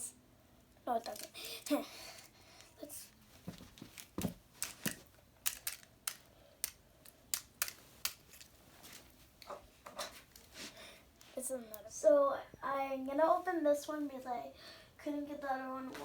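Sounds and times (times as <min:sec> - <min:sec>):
plastic packaging clicking and crackling: 0:03.8 - 0:09.1.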